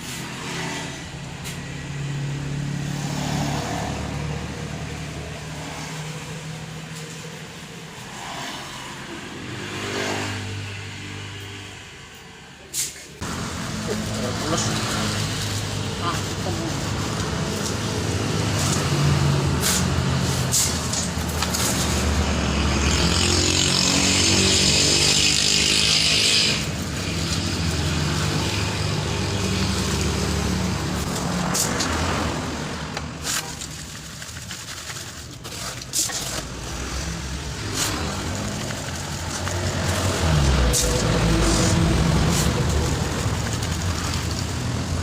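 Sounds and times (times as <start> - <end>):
vehicle engine running: 13.2 - 45.0.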